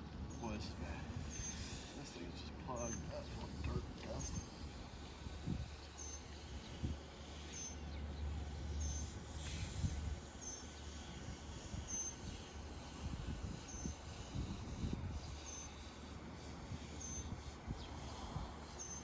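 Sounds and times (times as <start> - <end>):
wind buffeting microphone: 0.0 - 7.4, 8.0 - 18.8
small bird chirping: 1.3 - 1.8, 2.4 - 4.6, 5.6 - 9.3, 10.2 - 12.6, 13.6 - 14.3, 15.2 - 16.0, 16.8 - 19.0
brief hiss: 9.2 - 10.0.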